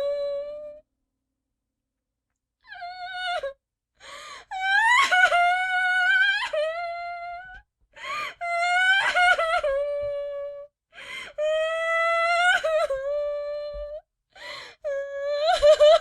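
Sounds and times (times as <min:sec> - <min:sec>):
gasping in-breaths: 0:04.0 - 0:04.5, 0:10.9 - 0:11.4, 0:14.4 - 0:14.8.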